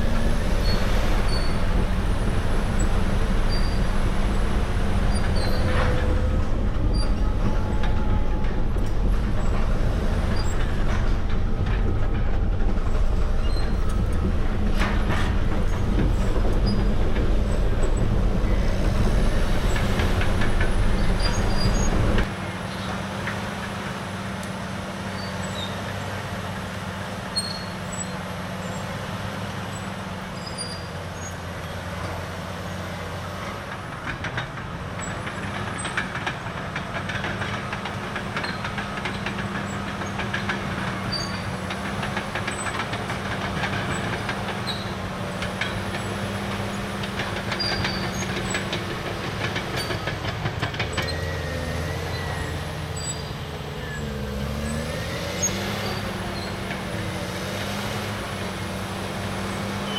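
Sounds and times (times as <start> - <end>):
deep low rumble: 0.0 - 22.3
bulldozer diesel engine running: 0.0 - 59.9.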